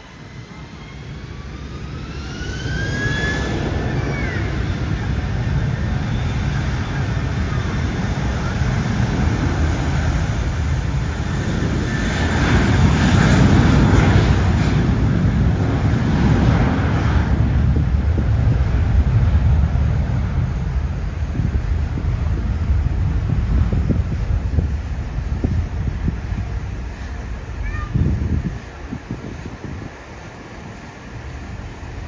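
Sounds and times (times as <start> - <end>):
jet engines spooling up: 0.0 - 32.0.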